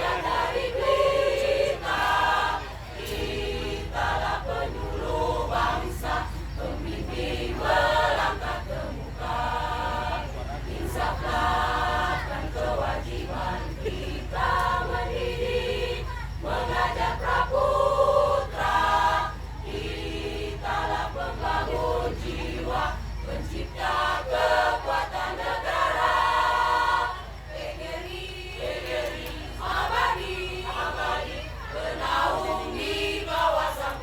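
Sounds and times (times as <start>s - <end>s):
choir singing: 0.0s - 34.0s.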